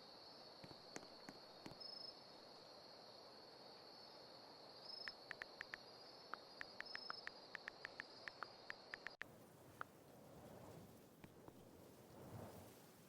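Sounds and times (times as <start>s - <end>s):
high-pitched insect chorus: 0.0s - 9.2s.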